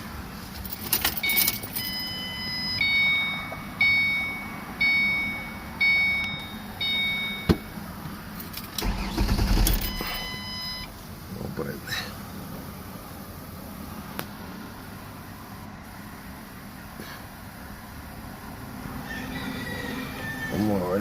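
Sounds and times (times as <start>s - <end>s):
car warning chime: 1.2s - 7.9s, 8.8s - 11.0s.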